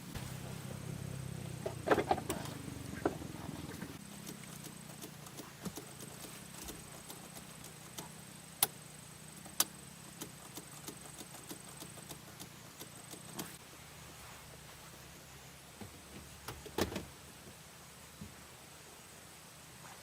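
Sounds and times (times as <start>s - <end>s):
faint steady hum: 0.0s - 20.0s
light clicks and taps: 1.6s - 8.8s, 9.4s - 13.6s.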